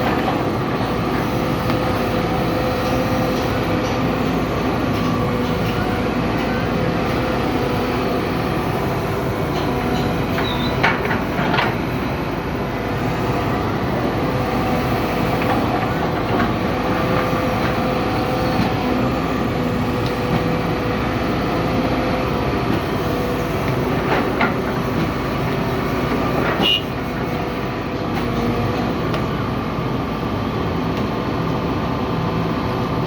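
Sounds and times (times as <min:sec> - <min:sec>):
excavator diesel engine running: 0:00.0 - 0:33.0
short squeal: 0:10.4 - 0:10.8.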